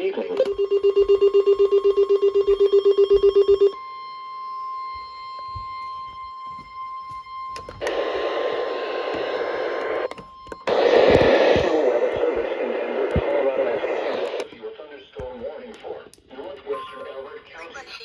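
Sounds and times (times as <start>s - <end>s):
rapid electronic alarm beeping: 0.4s - 3.8s.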